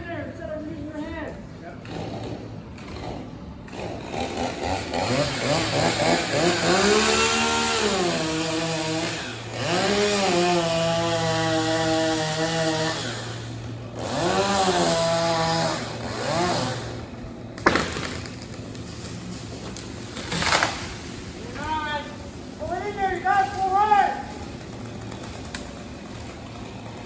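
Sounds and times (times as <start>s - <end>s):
chainsaw cutting wood: 1.8s - 21.4s
wood cracking: 17.6s - 23.7s.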